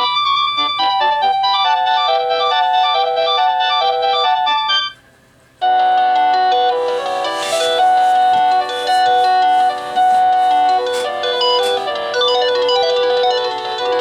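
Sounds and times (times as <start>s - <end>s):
cordless phone ringtone melody: 0.0s - 5.0s, 5.6s - 7.8s, 10.6s - 14.0s
ringtone with long held notes: 0.0s - 5.0s, 5.6s - 14.0s.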